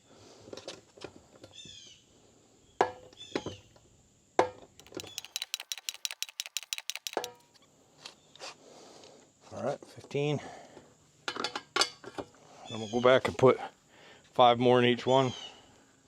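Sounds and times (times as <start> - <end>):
hand pump metallic clanks: 4.8 - 7.3
rattling clicks: 4.8 - 7.3
small bird chirping: 4.8 - 7.3.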